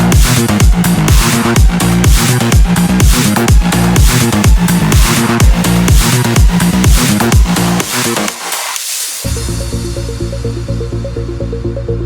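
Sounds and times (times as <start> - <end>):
electronic music with synth: 0.0 - 12.0.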